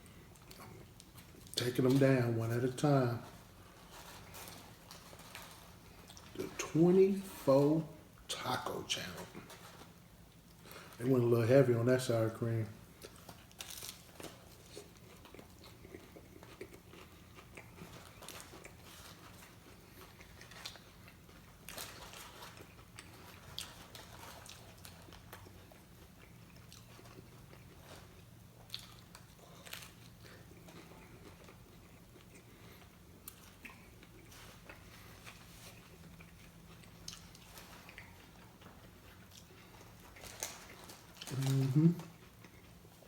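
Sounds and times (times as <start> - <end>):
low steady hum: 0.0 - 43.0
chewing and biting food: 12.9 - 43.0.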